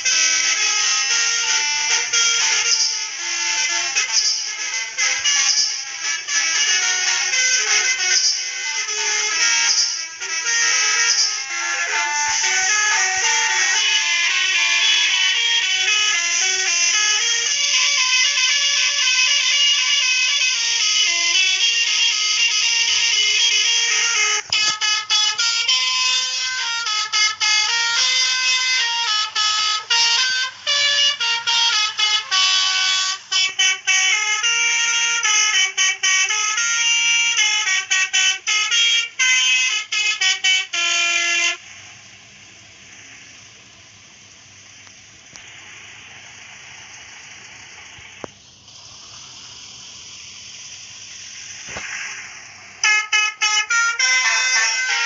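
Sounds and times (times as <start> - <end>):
multi-tone horn playing tune: 0.0 - 42.8, 52.8 - 55.0
steady hiss: 40.0 - 53.6.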